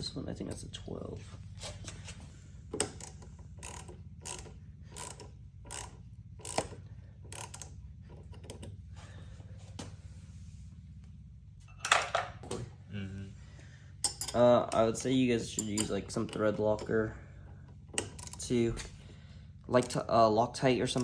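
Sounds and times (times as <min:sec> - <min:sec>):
ratchet wrench clicking: 0:02.8 - 0:08.6, 0:14.0 - 0:17.2, 0:17.9 - 0:18.5, 0:19.7 - 0:20.1.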